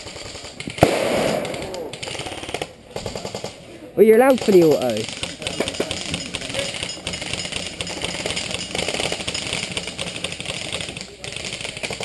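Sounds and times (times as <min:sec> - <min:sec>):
airsoft guns firing full auto: 0:00.0 - 0:12.0.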